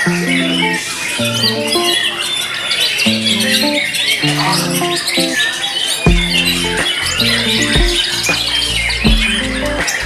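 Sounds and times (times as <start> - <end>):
faint bird chirps: 0.0 - 10.0
music with deep bass notes: 6.1 - 10.0.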